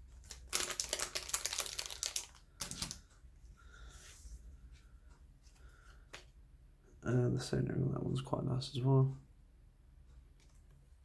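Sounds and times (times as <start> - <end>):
plastic card sleeves crinkling: 0.2 - 3.0.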